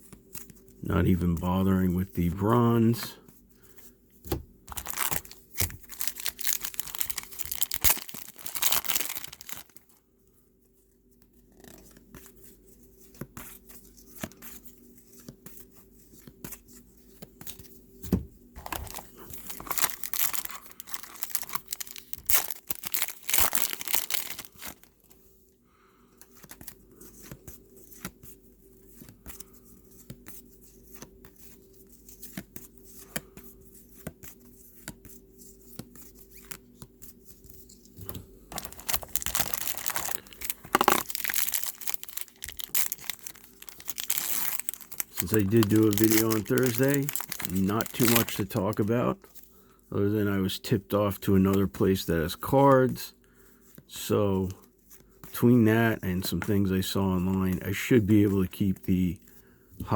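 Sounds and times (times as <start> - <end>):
card pack wrappers tearing: 4.7 - 9.8, 18.6 - 25.1, 38.5 - 49.0.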